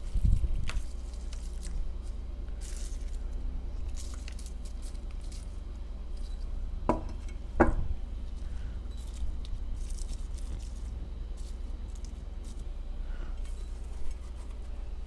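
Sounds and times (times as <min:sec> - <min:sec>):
food handling crinkles and ticks: 0:00.0 - 0:06.5, 0:08.2 - 0:12.8
steady low hum: 0:00.0 - 0:15.0.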